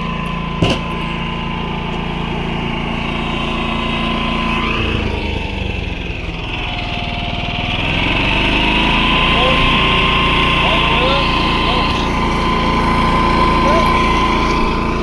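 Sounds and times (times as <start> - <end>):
generator running: 0.0 - 15.0
sharp knock: 0.6 - 1.0.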